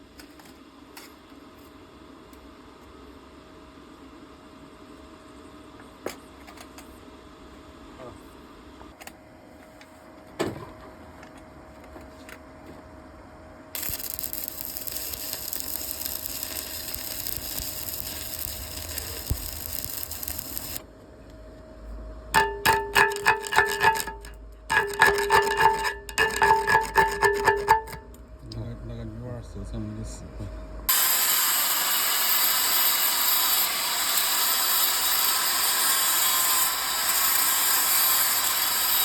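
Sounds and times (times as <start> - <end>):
rasping strokes on ringing steel: 30.9 - 39.0.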